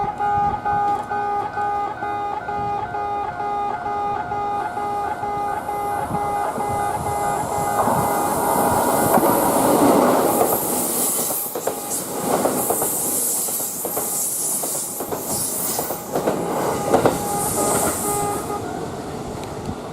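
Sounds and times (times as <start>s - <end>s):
faint crossing warning bell: 0.0s - 10.8s, 15.6s - 19.5s
train running noise: 0.0s - 19.9s
train wheels clacking on rails: 4.7s - 19.9s.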